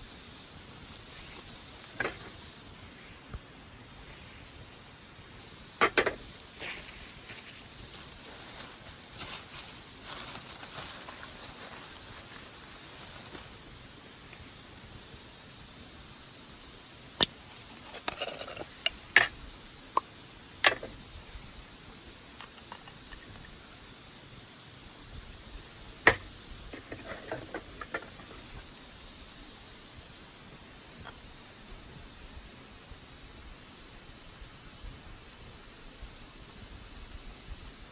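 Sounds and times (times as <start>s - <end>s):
wood fire crackling: 0.0s - 32.0s
sharp pops: 5.8s - 6.8s.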